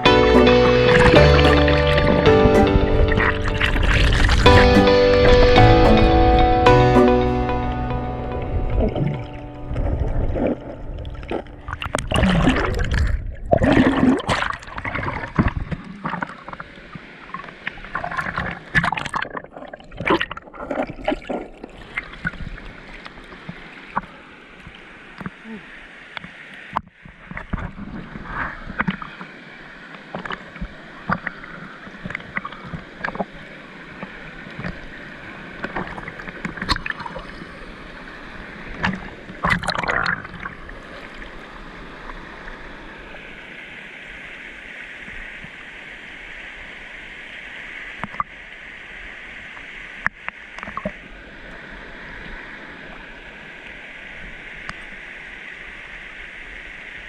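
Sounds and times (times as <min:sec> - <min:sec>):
sharp water splashes: 0:00.0 - 0:06.5, 0:08.6 - 0:16.6
rushing mountain stream: 0:00.0 - 0:57.0.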